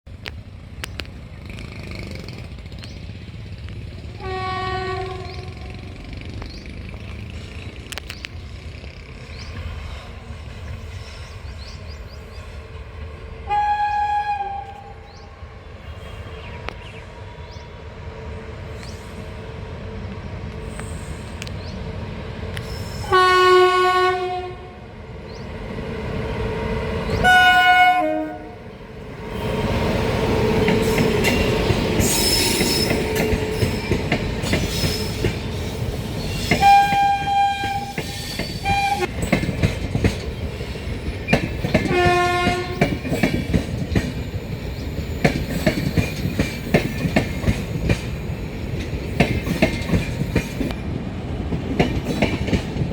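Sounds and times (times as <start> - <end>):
train rumbling past: 0.1 - 52.9
train horn blasts: 4.2 - 6.0, 13.4 - 15.2, 22.9 - 24.9, 27.1 - 28.7, 36.6 - 39.1, 41.8 - 42.9
wheels clattering over rail joints: 30.2 - 50.8.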